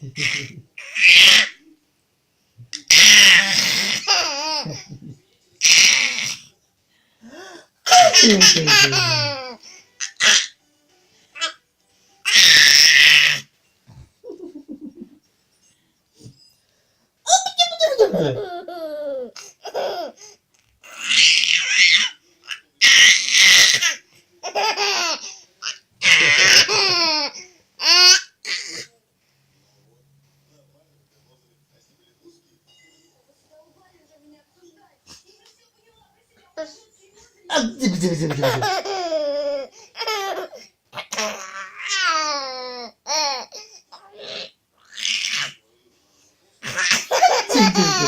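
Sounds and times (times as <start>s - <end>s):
baby laughing: 0.1s - 1.5s, 2.8s - 5.0s, 7.9s - 10.5s, 17.3s - 20.2s, 26.0s - 28.3s, 38.3s - 43.6s, 46.6s - 48.0s.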